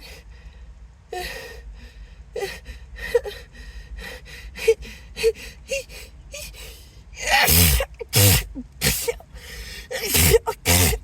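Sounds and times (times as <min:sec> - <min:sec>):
person gasping in-breaths: 0:07.4 - 0:11.0.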